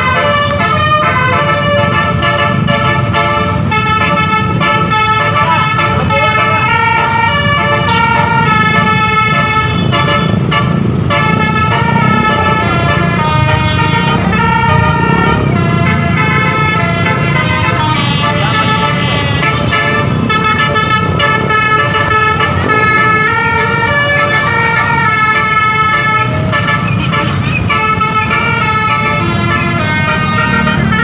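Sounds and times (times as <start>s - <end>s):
musical bus horn melody: 0.0s - 31.0s.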